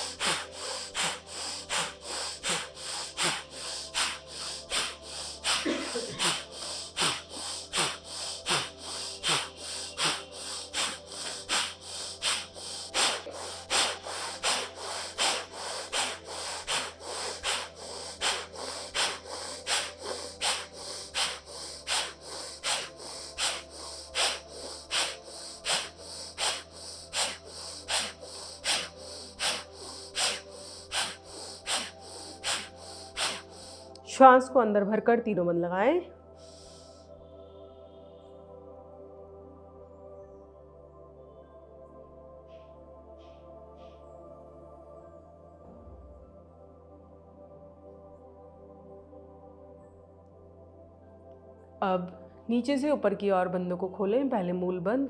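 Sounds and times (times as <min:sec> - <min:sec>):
woman breathing forcefully: 0:00.0 - 0:34.0, 0:36.4 - 0:37.8.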